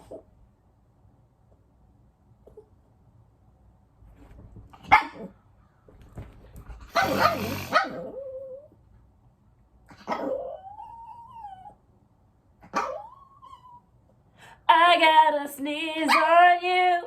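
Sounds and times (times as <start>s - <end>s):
dog barking: 4.8s - 5.3s, 6.9s - 8.2s, 9.9s - 10.5s, 12.6s - 13.1s
dog whining: 6.9s - 8.8s, 9.9s - 11.8s, 12.7s - 14.0s.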